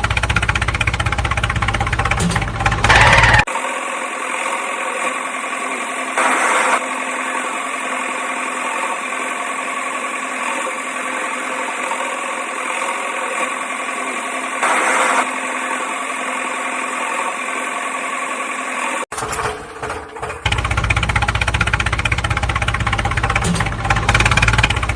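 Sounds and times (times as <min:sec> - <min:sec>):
toy vehicle motor humming: 0:00.0 - 0:19.1.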